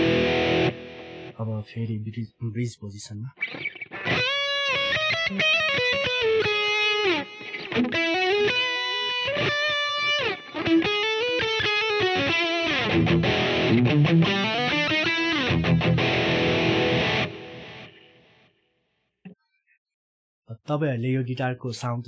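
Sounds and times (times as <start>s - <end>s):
distorted electric guitar: 0.0s - 1.4s, 3.4s - 18.5s.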